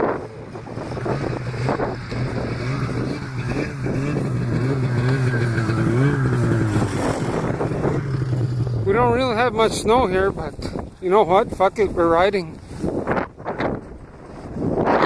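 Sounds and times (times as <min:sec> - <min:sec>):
low hum: 0:00.0 - 0:10.9
snowmobile engine running: 0:00.0 - 0:15.0.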